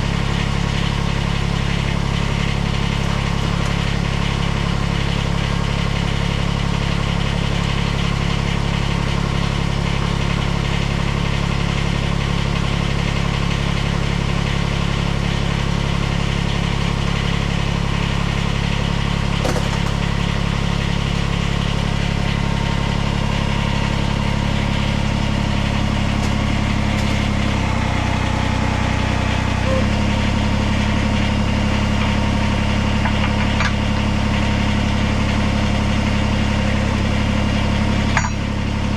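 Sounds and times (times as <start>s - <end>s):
diesel engine idling: 0.0s - 30.2s.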